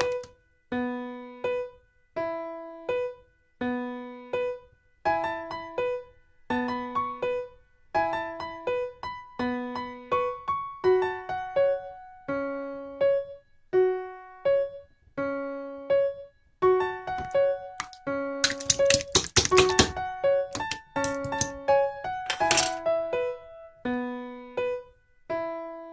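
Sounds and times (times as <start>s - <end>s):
bouncy electric piano melody: 0.0s - 0.3s, 17.1s - 23.4s.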